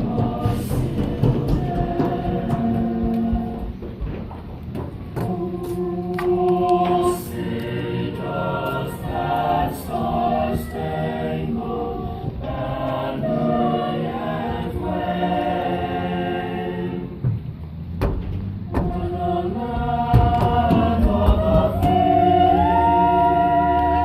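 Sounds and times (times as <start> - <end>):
choir singing: 0.0 - 3.8, 5.2 - 17.4, 18.7 - 24.0.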